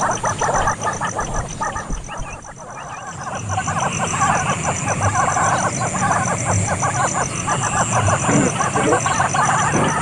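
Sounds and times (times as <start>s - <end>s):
chorus of animal chirps: 0.0s - 10.0s
low falling animal call: 8.1s - 10.0s.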